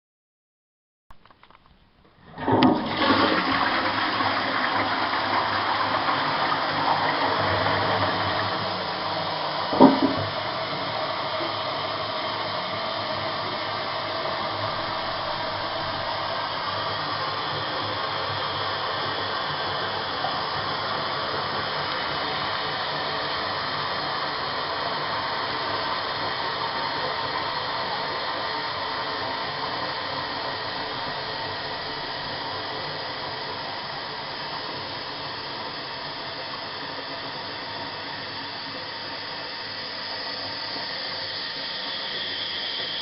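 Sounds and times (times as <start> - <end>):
water running: 2.1 - 33.8
toilet flushing: 2.1 - 43.0
water gurgling: 2.2 - 35.2.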